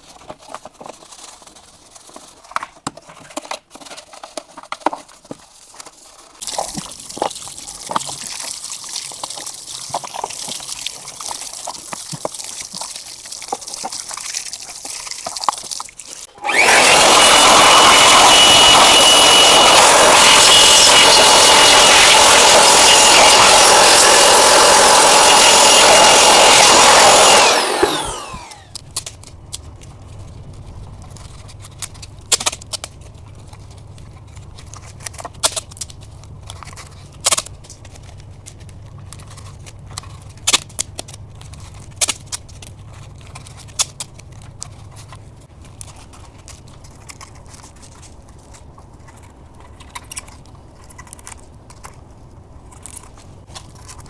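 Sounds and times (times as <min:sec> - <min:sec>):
electric power tool whining: 0:16.3 - 0:28.8.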